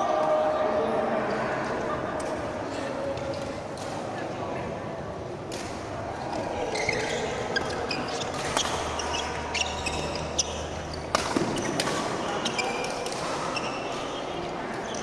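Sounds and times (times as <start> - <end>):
indoor hall hubbub: 0.0 - 15.0
shoes squeaking on court floor: 6.6 - 15.0
racket hitting shuttlecock: 11.1 - 14.1.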